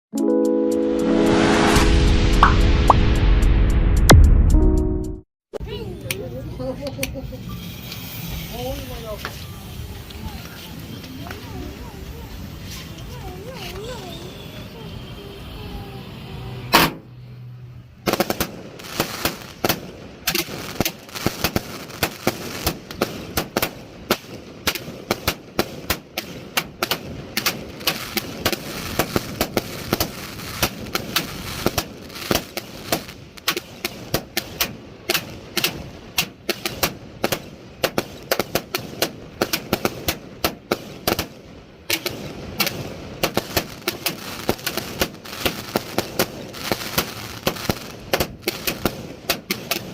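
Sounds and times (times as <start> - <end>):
fireworks bangs: 18.0 - 49.9.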